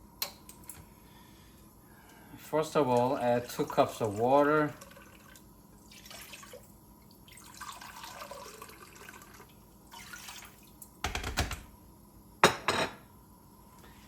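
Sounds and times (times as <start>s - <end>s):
water pouring into pot: 3.4s - 10.8s.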